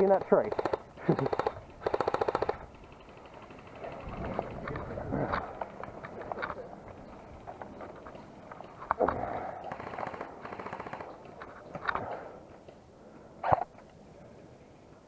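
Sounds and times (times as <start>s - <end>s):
rapid clicking shots: 0.0s - 6.4s, 9.6s - 11.4s.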